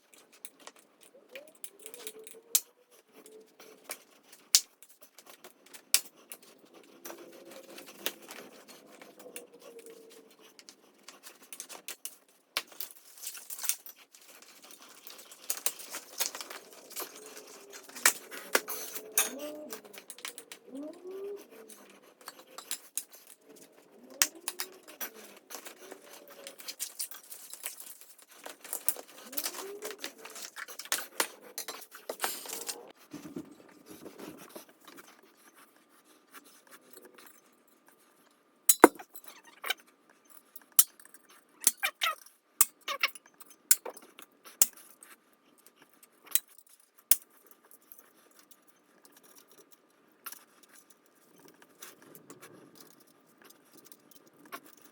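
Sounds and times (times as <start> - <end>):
metal tools and bike parts clinking: 0.1 - 4.0, 11.1 - 20.7, 21.7 - 32.9, 38.7 - 39.8.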